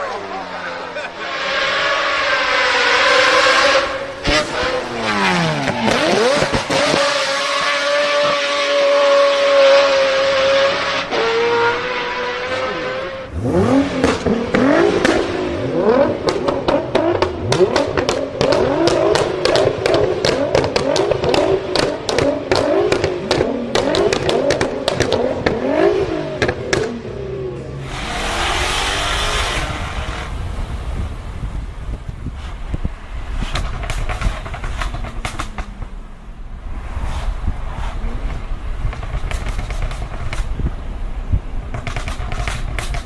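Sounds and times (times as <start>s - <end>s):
car engine revving: 0.0s - 32.0s, 33.0s - 41.0s
exhaust pops and crackles: 13.6s - 27.1s, 30.9s - 36.2s, 37.5s - 43.0s
rushing noise: 24.7s - 41.5s.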